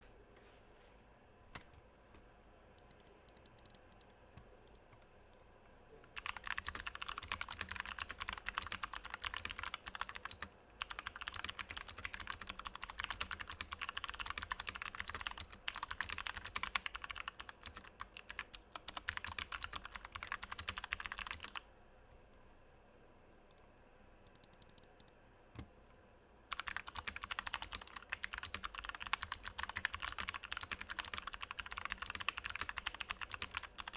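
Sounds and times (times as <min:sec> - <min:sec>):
mechanical keyboard typing: 0:02.8 - 0:05.4, 0:06.1 - 0:21.6, 0:24.3 - 0:25.1, 0:26.5 - 0:33.9.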